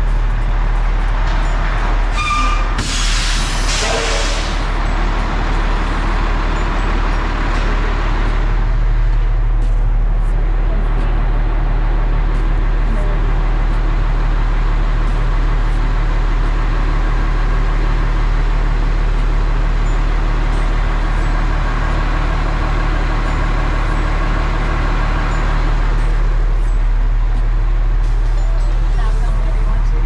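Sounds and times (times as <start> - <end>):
harvest machinery engine hum: 0.0 - 30.0
mechanical rumble: 0.0 - 30.0.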